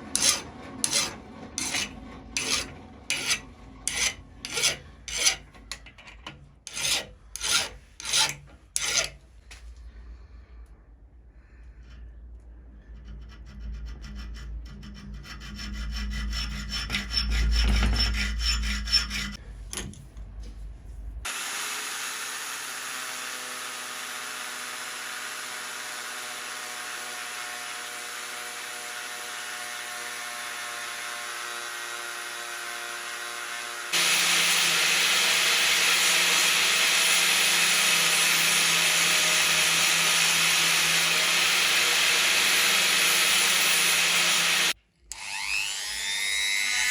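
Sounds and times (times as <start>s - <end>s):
hand file rasping on steel: 0.0s - 5.8s, 6.6s - 9.2s, 12.8s - 19.4s, 33.9s - 44.8s.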